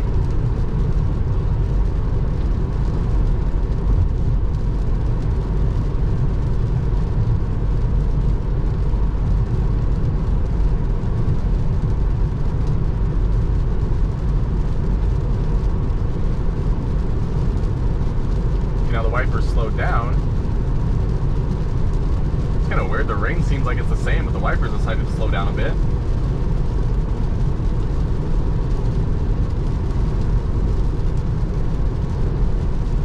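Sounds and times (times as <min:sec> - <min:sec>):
rain and road spray: 0:00.0 - 0:33.0
tyre and road noise: 0:00.0 - 0:33.0.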